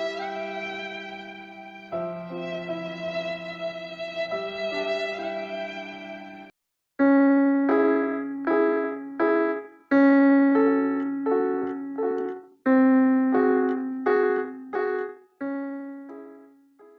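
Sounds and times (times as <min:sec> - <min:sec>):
piano melody: 0:00.0 - 0:16.9.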